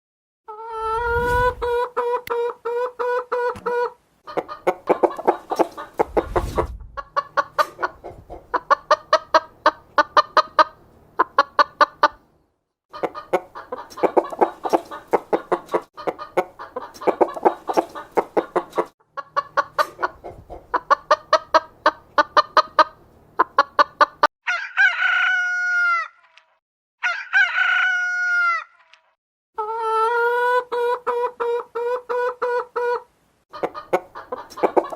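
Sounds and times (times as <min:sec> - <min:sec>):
chickens clucking and cackling: 0:00.5 - 0:26.2, 0:27.0 - 0:28.8, 0:29.6 - 0:34.9
rooster crowing: 0:24.5 - 0:26.2, 0:27.0 - 0:28.7.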